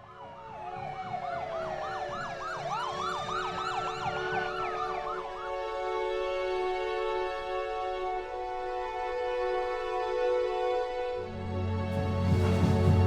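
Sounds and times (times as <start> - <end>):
sirens wailing: 0.0 - 7.2.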